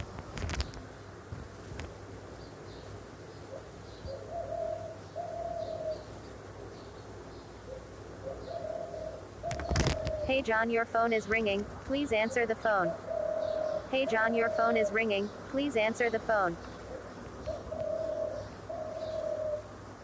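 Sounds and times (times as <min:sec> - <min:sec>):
pigeon cooing: 0:03.5 - 0:06.1, 0:07.7 - 0:20.0.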